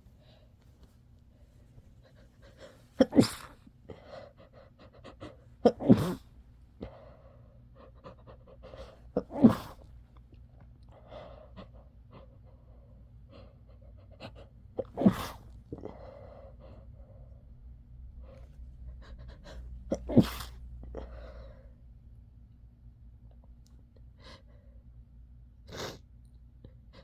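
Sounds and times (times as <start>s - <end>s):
quiet breathing: 0.0s - 10.1s, 10.8s - 22.0s
person sneezing: 2.7s - 3.6s, 5.6s - 6.3s, 8.8s - 9.9s, 14.8s - 15.5s, 19.9s - 21.2s.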